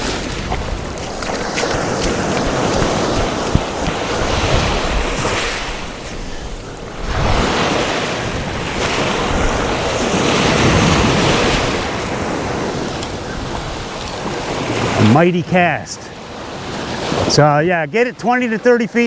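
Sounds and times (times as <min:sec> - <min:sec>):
wind buffeting microphone: 0:00.0 - 0:15.2
surf breaking and washing: 0:00.0 - 0:19.0.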